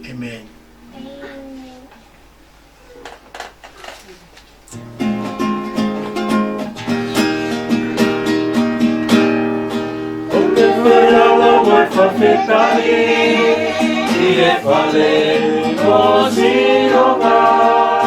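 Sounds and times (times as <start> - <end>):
strummed guitar chords: 4.8 - 18.0
people singing: 10.3 - 18.0.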